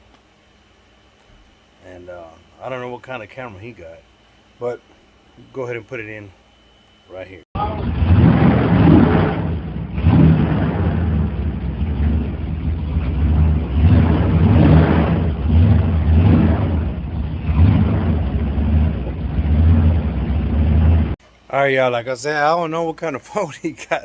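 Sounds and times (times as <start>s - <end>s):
pickup truck engine revving: 7.6s - 21.2s.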